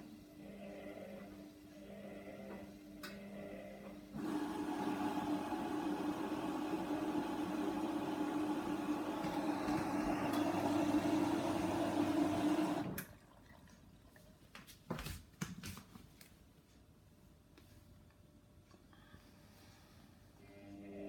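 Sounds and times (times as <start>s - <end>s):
washing machine filling with water: 4.2s - 14.4s.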